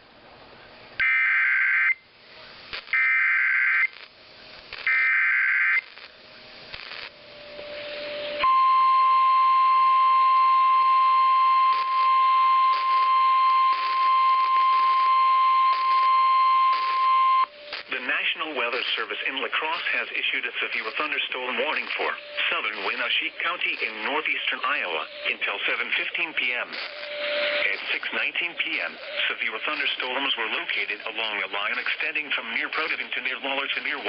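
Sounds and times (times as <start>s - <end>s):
screeching data bursts: 2.8s - 4.1s, 4.8s - 6.1s, 10.8s - 33.3s.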